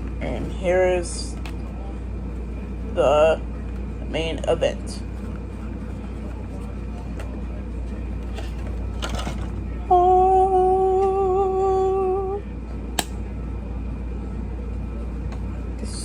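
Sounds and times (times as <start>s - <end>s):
person humming: 9.9s - 12.4s.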